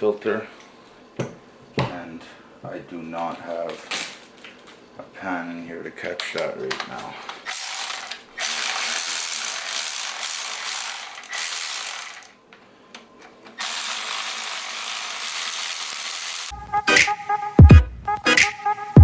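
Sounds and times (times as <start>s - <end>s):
music with heavy bass beats: 16.6s - 19.0s.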